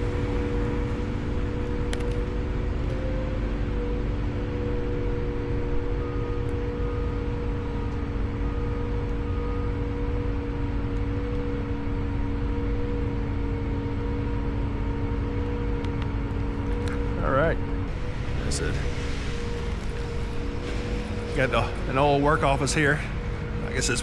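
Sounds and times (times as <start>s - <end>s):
machinery humming: 0.0s - 24.0s.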